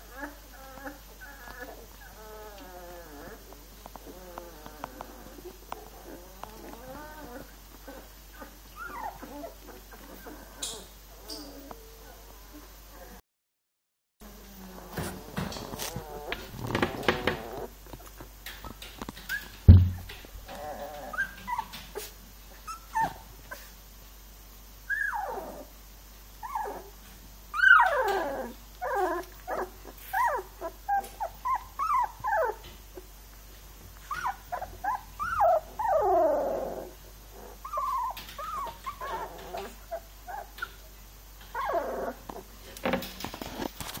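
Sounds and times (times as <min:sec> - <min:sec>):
puppies whimpering: 0:00.0 - 0:13.2, 0:14.7 - 0:17.7, 0:19.2 - 0:23.7, 0:24.9 - 0:25.7, 0:26.4 - 0:32.7, 0:34.0 - 0:42.5
thump: 0:19.7 - 0:20.2.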